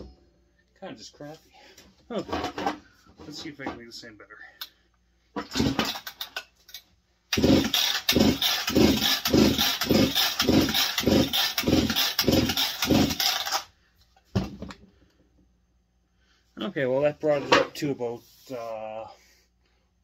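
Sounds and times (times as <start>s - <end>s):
chainsaw pull-starter cranking: 7.3s - 13.7s.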